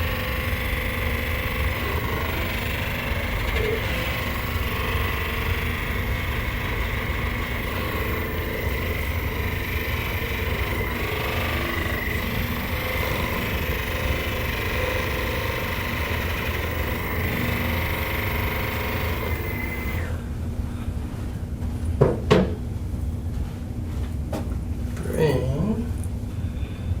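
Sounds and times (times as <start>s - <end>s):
small electric motor whining: 0.0s - 20.2s.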